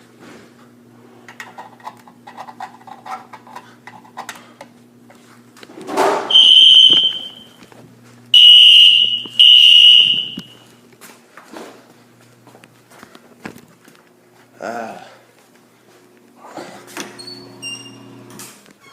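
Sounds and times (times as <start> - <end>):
fire alarm tone: 6.3 - 7.6, 8.4 - 10.6.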